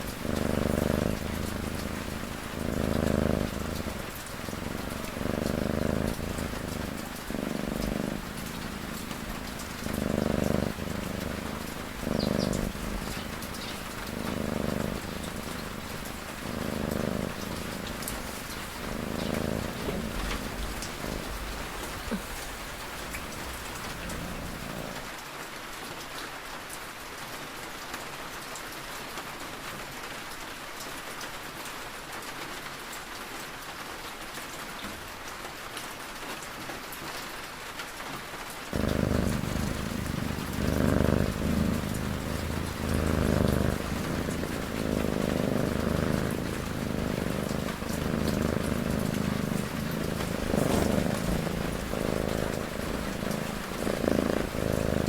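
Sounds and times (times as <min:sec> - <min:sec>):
cat snoring: 0:00.0 - 0:25.1, 0:38.7 - 0:55.0
steady rain falling: 0:00.0 - 0:55.0.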